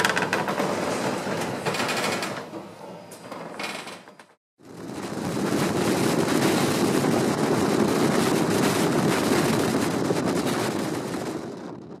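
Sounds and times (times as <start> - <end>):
wind buffeting microphone: 4.6 - 12.0.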